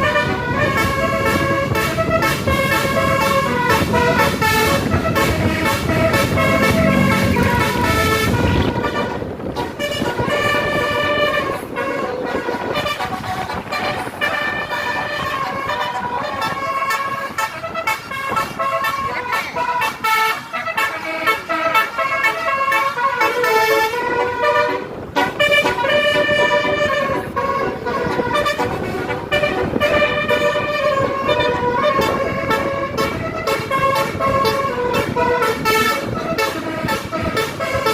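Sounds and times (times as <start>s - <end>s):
bus horn playing a tune: 0.0s - 37.9s.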